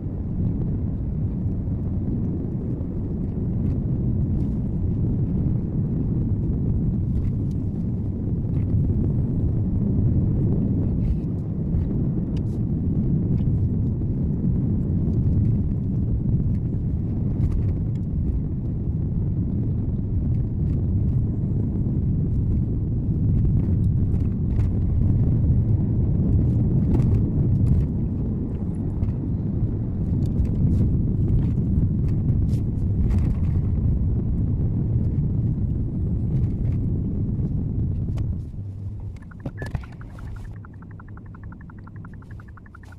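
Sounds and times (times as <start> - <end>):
small clicks: 39.2 - 42.9.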